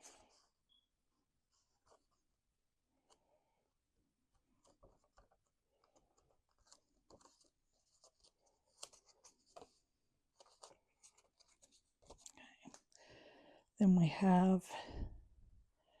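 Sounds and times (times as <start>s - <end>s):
cardstock rustling and scratching: 4.4s - 12.9s.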